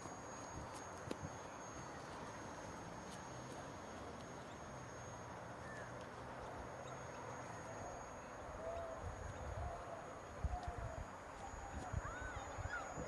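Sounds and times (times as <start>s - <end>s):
faint outdoor background noise: 0.0s - 13.0s
bird calling: 5.5s - 11.0s.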